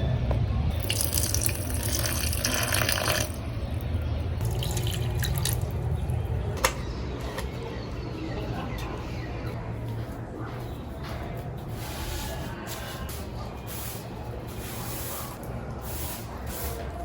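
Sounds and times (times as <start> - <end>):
tap water running into sink: 0.8 - 3.4
water dripping: 0.8 - 5.8.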